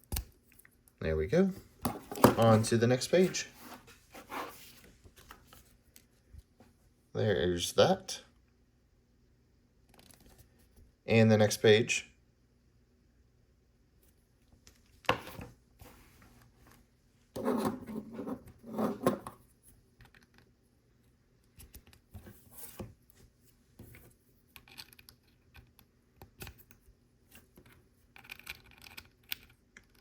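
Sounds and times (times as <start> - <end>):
paper rustling and scraping: 2.0 - 5.7.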